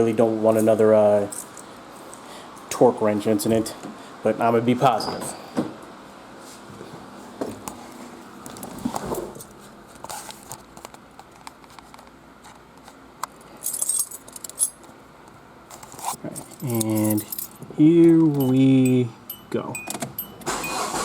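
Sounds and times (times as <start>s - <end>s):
keys jangling: 13.6s - 14.8s, 16.3s - 18.7s.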